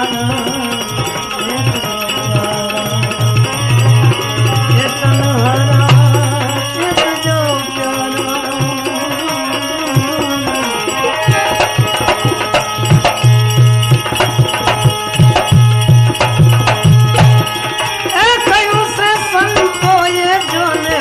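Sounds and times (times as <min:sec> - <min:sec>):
sliding melody line: 0:00.0 - 0:21.0
hand drum strokes: 0:08.8 - 0:20.0.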